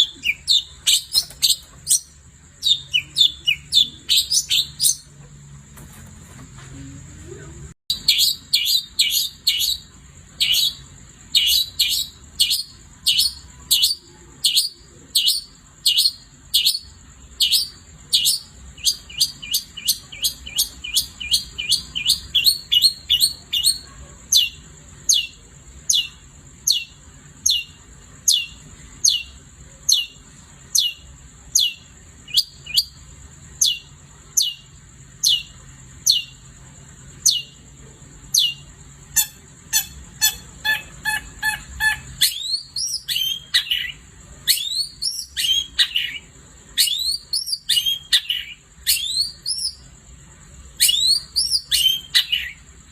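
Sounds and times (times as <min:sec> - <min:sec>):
bird singing sharp downward notes: 0:00.0 - 0:05.3, 0:37.2 - 0:50.0, 0:50.7 - 0:52.7.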